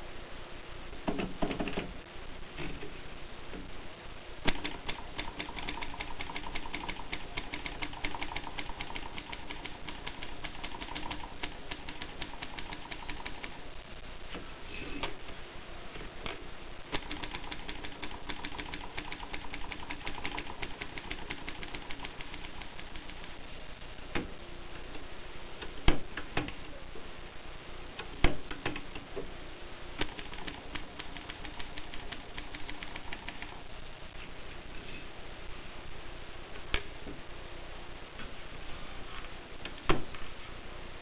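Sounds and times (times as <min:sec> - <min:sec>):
typewriter keys clacking: 0:04.5 - 0:13.6, 0:16.9 - 0:23.3, 0:30.0 - 0:33.6.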